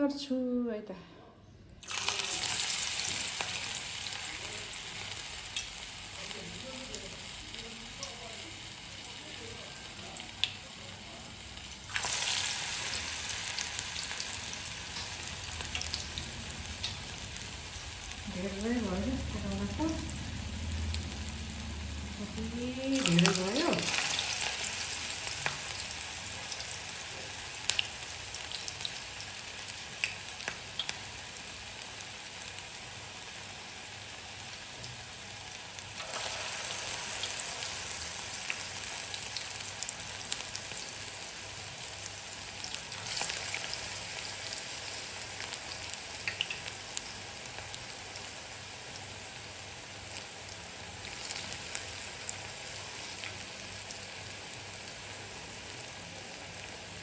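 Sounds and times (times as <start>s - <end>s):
oil sizzling: 1.8s - 57.0s
sharp pops of frying: 25.3s - 26.8s, 27.6s - 29.1s, 29.9s - 31.2s, 45.2s - 48.0s.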